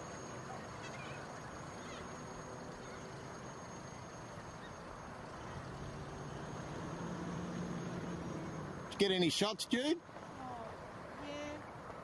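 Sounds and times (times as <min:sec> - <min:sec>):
thin high-pitched whine: 0:00.0 - 0:12.0
faint bird calls: 0:00.5 - 0:03.4, 0:04.5 - 0:05.0.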